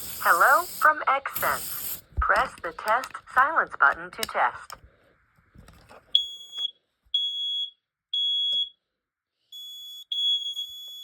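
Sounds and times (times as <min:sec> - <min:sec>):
smoke alarm beeps: 0:06.1 - 0:08.8, 0:09.5 - 0:11.0
quieter alarm beep: 0:06.2 - 0:08.8, 0:09.5 - 0:11.0.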